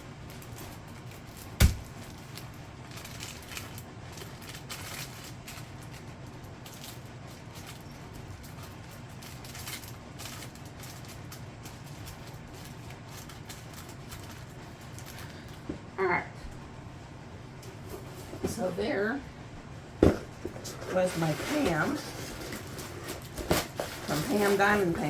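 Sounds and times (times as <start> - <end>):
steady low hum: 0.0 - 25.0
packaging rustling and clicking: 0.3 - 15.5, 20.2 - 25.0.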